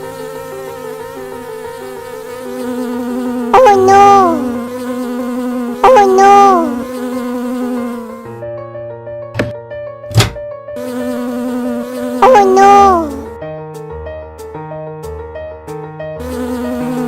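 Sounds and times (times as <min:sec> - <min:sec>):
loud drawn-out cry: 0:03.6 - 0:04.6, 0:12.2 - 0:13.3.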